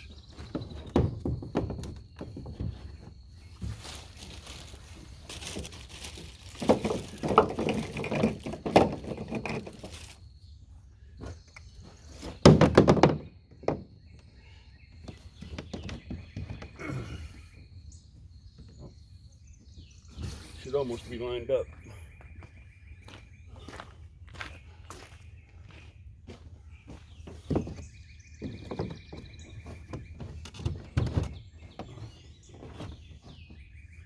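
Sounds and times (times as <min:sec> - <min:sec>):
plastic pipe knocking and clattering: 0:00.3 - 0:03.1, 0:06.5 - 0:10.1, 0:12.4 - 0:14.0.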